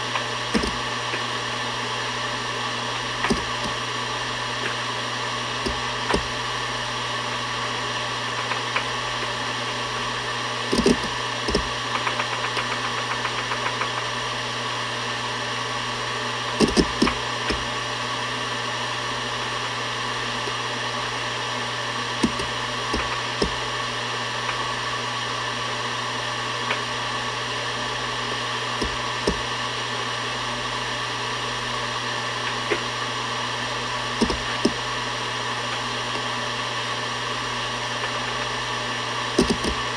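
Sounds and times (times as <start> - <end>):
hard drive seek clicks: 0.0 - 14.6, 15.4 - 25.2, 26.5 - 39.9
hard drive whirring: 0.0 - 39.9.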